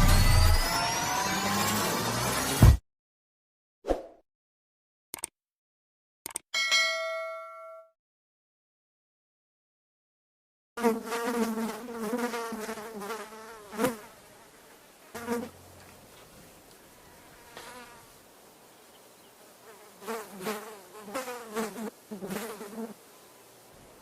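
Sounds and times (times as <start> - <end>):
flies buzzing in flight: 10.8 - 15.6, 16.9 - 18.2, 19.3 - 23.4.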